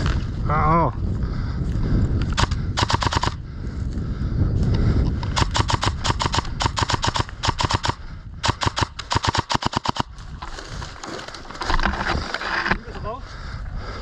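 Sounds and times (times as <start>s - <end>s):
airsoft gun full-auto bursts: 2.4s - 3.4s, 5.3s - 10.1s.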